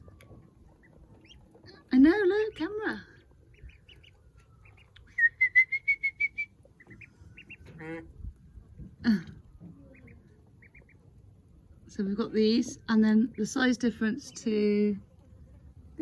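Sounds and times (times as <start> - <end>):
ducklings peeping: 0.0 - 16.0
lower longer duckling calls: 3.6 - 7.8, 9.9 - 11.0.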